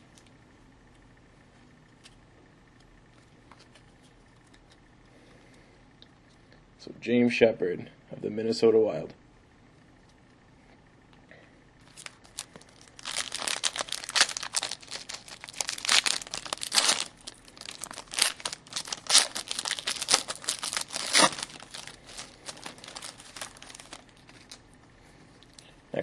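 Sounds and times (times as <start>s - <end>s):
wrapper tearing and crumpling: 11.9s - 24.6s.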